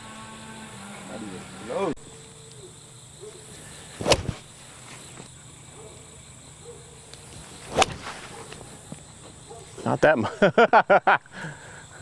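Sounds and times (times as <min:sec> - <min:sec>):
golf club striking ball: 0:04.0 - 0:05.1, 0:07.4 - 0:08.8.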